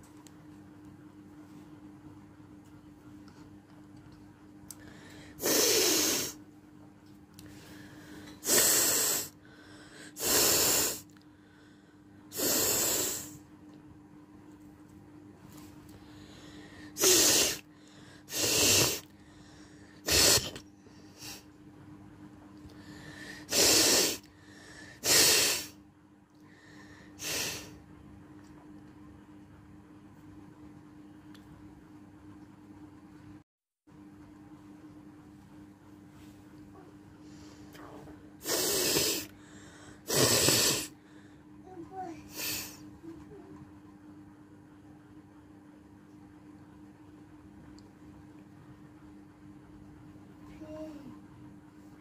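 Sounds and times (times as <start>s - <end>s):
person blowing nose: 5.4s - 6.4s, 8.4s - 9.3s, 10.2s - 11.0s, 12.3s - 13.4s, 17.0s - 17.6s, 18.3s - 19.0s, 20.0s - 20.6s, 23.5s - 24.2s, 25.0s - 25.7s, 27.2s - 27.8s, 38.4s - 39.3s, 40.1s - 41.0s.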